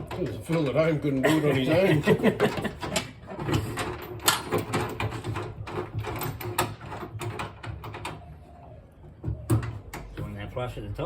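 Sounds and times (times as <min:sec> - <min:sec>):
metal rack parts clicking and knocking: 0:00.0 - 0:08.2.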